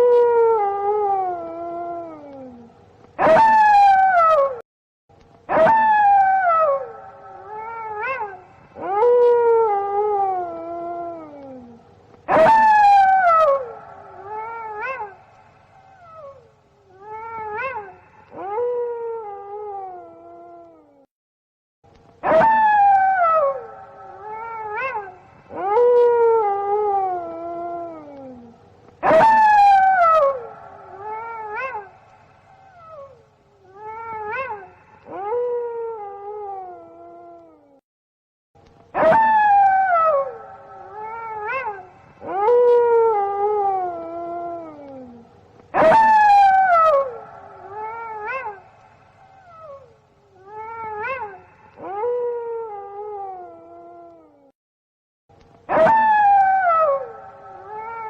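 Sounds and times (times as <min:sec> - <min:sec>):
wolves howling: 0:03.2 - 0:04.6, 0:05.5 - 0:15.3, 0:22.2 - 0:32.1, 0:38.9 - 0:54.3, 0:55.7 - 0:58.0.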